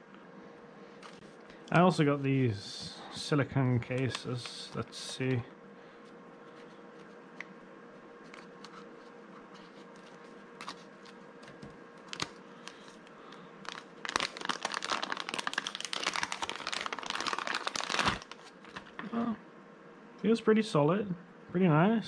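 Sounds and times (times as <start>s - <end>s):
packaging crinkling: 3.8s - 5.2s, 8.3s - 19.1s.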